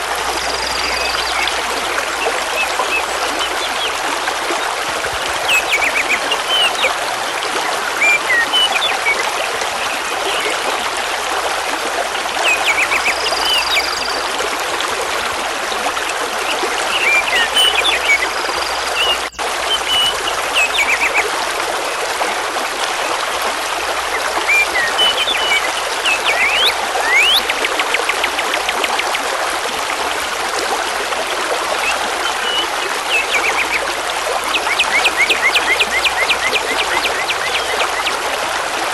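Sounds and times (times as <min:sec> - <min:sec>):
songbirds chirping and trilling: 0:00.0 - 0:07.0, 0:12.4 - 0:14.4, 0:16.6 - 0:21.2, 0:23.9 - 0:29.2, 0:31.8 - 0:38.2
river rushing over stones: 0:00.0 - 0:38.9.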